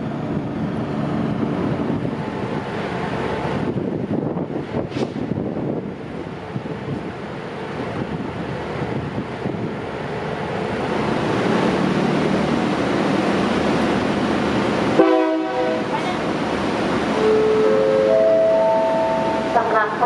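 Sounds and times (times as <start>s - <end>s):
diesel railcar engine and wheels: 0.0s - 20.0s
train horn blast: 15.0s - 16.0s, 17.2s - 20.0s.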